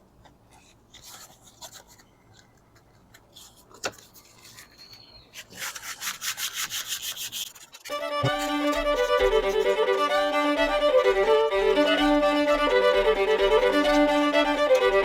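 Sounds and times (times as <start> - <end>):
sandpaper rubbing on wood: 5.4 - 7.9.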